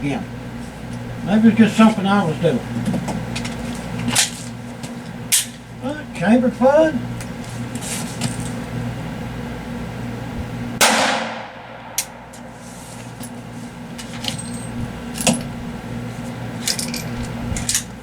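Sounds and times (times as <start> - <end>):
pistol shot: 10.8 - 12.3.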